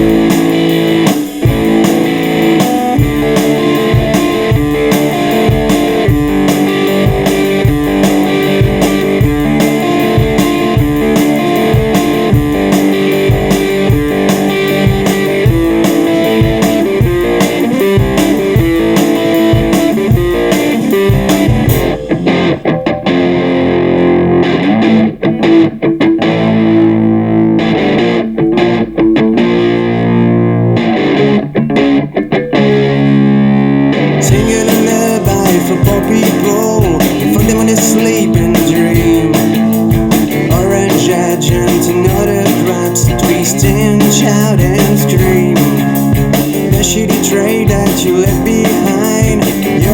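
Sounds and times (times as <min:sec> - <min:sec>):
drum beat: 0:00.0 - 0:23.6, 0:34.2 - 0:49.9
distorted electric guitar: 0:00.0 - 0:49.9.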